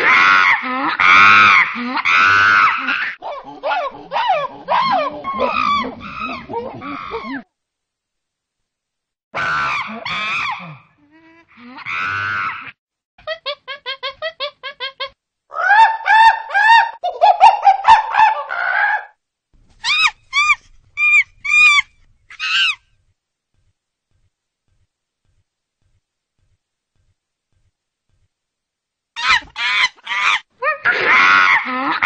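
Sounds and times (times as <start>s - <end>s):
bird calling: 19.8s - 22.8s.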